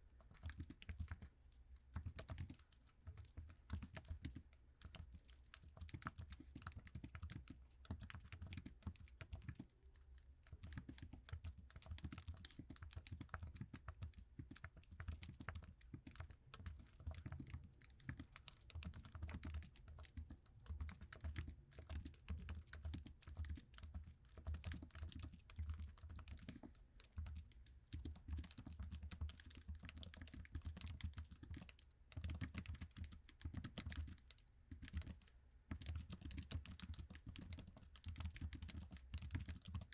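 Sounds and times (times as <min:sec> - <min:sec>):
keyboard typing clicks: 0:10.6 - 0:39.9.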